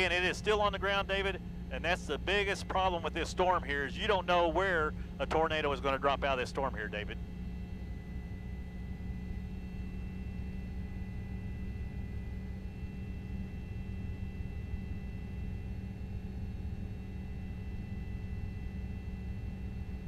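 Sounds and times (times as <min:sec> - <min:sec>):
steady low rumble: 0:00.0 - 0:12.7.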